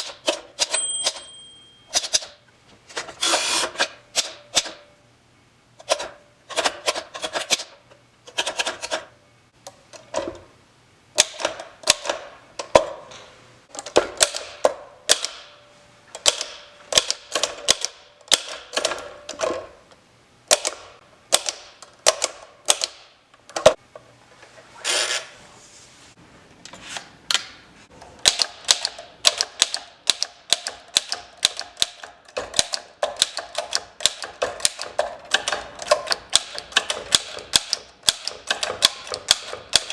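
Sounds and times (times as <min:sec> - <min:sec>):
typewriter keystroke clacks: 0:16.2 - 0:19.6, 0:28.2 - 0:39.9.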